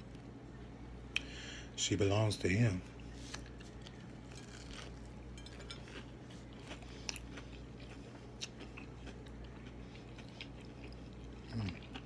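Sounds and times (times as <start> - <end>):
steady low hum: 0.0 - 12.0
close-up chewing: 3.3 - 12.0.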